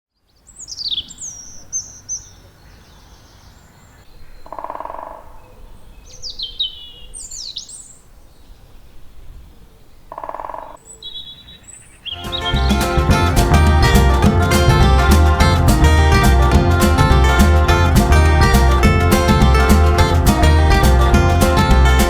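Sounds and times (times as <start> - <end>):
songbirds whistling: 6.0 - 8.0.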